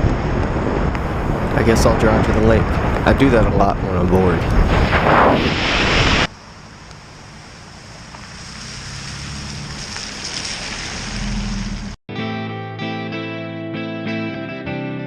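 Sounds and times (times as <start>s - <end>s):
tyres hissing on wet road: 7.1s - 12.0s.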